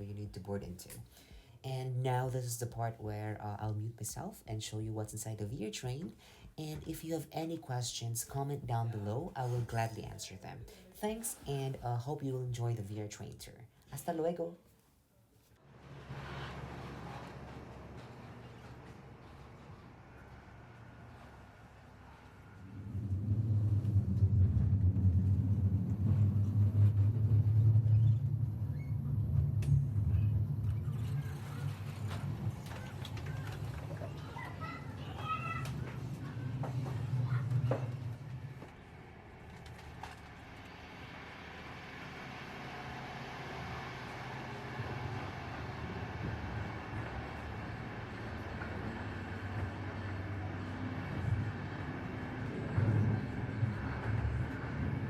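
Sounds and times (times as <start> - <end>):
passenger train rumble: 15.7 - 55.0.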